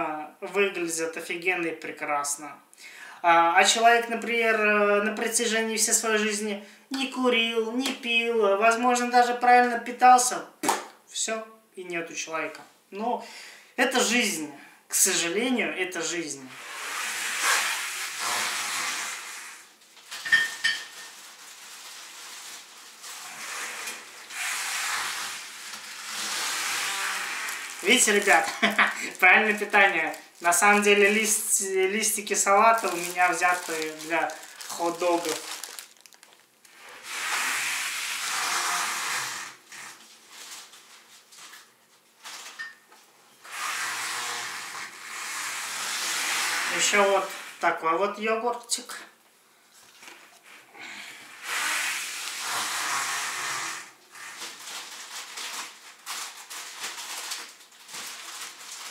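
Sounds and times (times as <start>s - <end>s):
plastic bags rustling: 19.0s - 37.4s, 39.9s - 42.9s, 54.1s - 58.9s.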